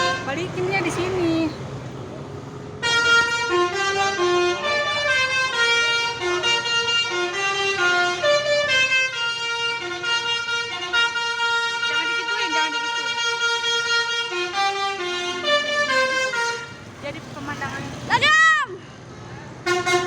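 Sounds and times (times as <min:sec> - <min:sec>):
musical bus air horn tune: 0:00.0 - 0:00.8, 0:02.8 - 0:17.0, 0:19.6 - 0:20.0.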